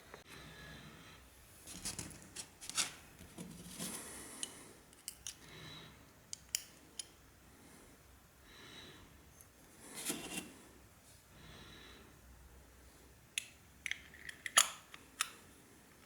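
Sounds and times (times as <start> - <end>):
metallic scraping and sliding: 9.9 - 10.6.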